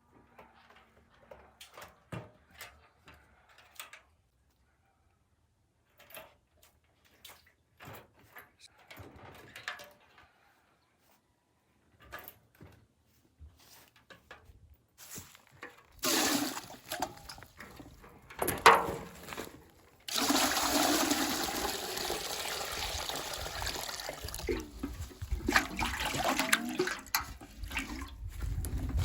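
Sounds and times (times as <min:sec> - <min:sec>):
water pouring: 0:16.0 - 0:17.7, 0:20.1 - 0:28.4
water splashes: 0:20.1 - 0:28.2.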